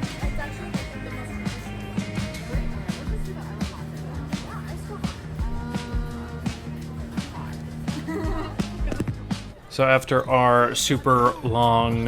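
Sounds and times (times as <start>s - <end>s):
music with beat and bass: 0.0s - 9.6s.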